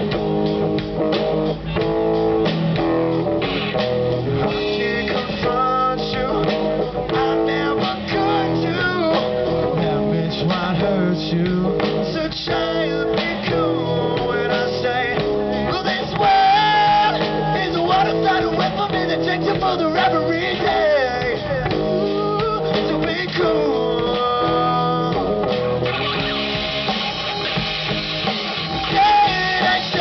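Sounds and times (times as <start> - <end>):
electric guitar: 0.0 - 30.0
rock band playing live: 0.0 - 30.0
person singing: 4.5 - 25.4, 28.8 - 30.0.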